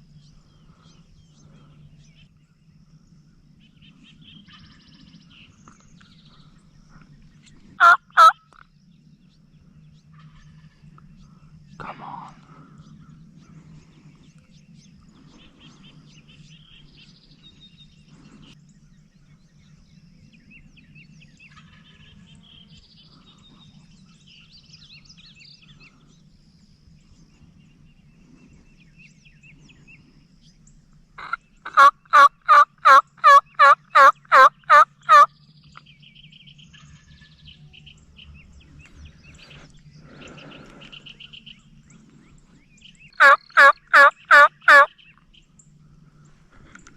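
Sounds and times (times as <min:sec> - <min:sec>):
turkey yelps: 0:07.8 - 0:08.4, 0:31.2 - 0:35.3, 0:43.2 - 0:44.9.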